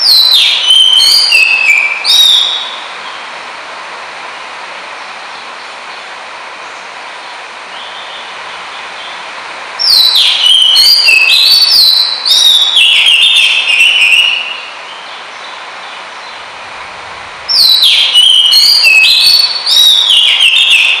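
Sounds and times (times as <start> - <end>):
bird singing whistled notes: 0.0 - 3.2, 9.8 - 16.4, 17.5 - 21.0
steady hiss: 0.0 - 21.0.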